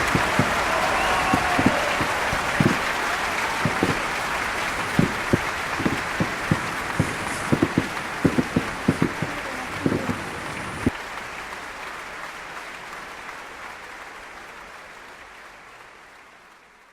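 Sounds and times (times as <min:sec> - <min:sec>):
low firework thuds: 0:00.0 - 0:11.0
crowd applauding: 0:00.0 - 0:16.9.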